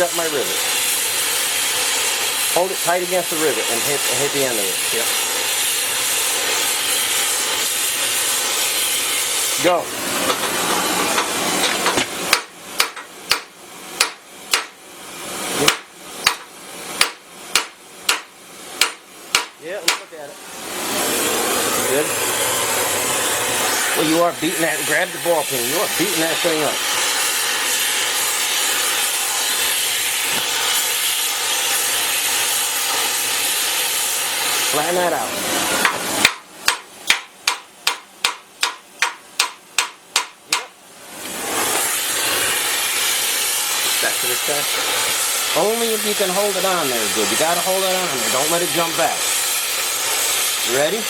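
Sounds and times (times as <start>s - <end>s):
steady hiss: 0.0s - 51.0s
hammer striking rivet tool: 11.2s - 14.8s, 15.6s - 20.1s, 35.8s - 40.8s.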